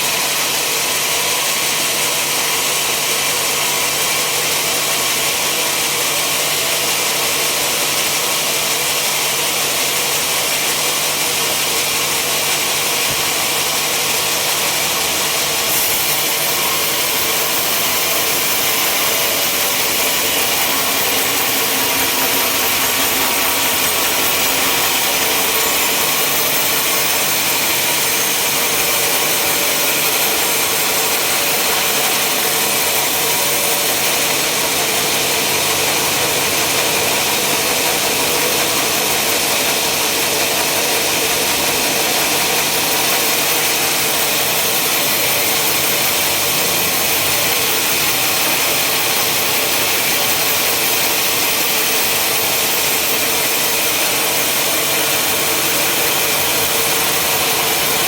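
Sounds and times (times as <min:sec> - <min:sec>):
saw whirring: 0:00.0 - 0:58.0.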